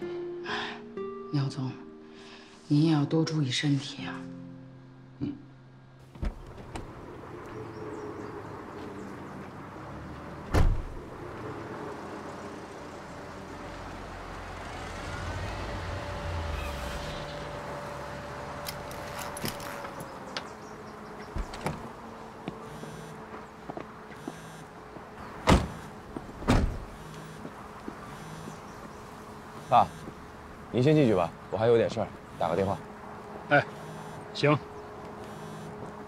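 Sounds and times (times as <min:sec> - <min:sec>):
loud thump: 0:10.5 - 0:11.0, 0:26.4 - 0:26.9.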